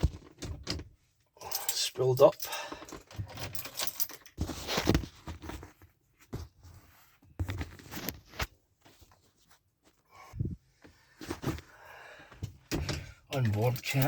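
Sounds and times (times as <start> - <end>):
rustling clicks and knocks: 0.0 - 6.6.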